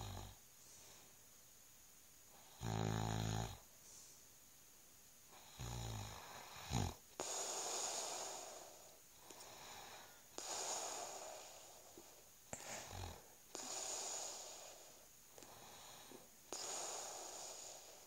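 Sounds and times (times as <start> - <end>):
man snoring: 0.0 - 0.4, 2.4 - 3.6, 5.4 - 8.7, 12.6 - 18.0
snort: 0.0 - 0.4, 2.4 - 3.6, 5.4 - 18.0
long airy breaths: 7.2 - 18.0.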